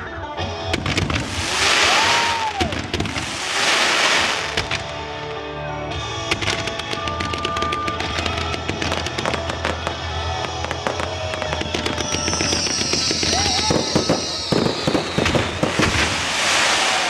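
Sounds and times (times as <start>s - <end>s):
fireworks crackling and popping: 0.6s - 5.4s, 6.0s - 17.0s
loud hiss: 0.8s - 5.0s, 10.7s - 17.0s
falling whistle: 1.4s - 2.7s, 11.9s - 17.0s.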